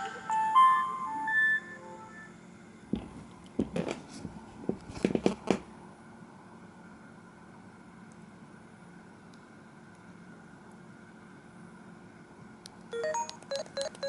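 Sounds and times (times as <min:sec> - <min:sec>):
phone ringtone: 0:00.0 - 0:02.4, 0:12.9 - 0:14.0.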